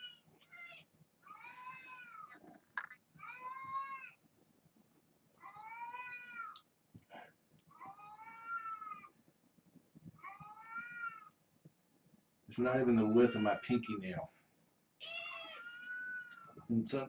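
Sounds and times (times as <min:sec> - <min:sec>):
cat meowing: 0:00.0 - 0:02.5, 0:03.2 - 0:04.2, 0:05.4 - 0:06.6, 0:07.7 - 0:09.2, 0:10.2 - 0:11.3, 0:13.1 - 0:13.8, 0:15.0 - 0:16.7.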